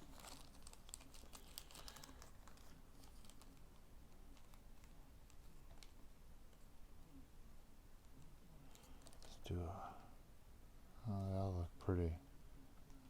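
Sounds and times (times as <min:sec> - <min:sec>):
cardboard and foil crinkling: 0:00.0 - 0:06.0, 0:08.7 - 0:09.4.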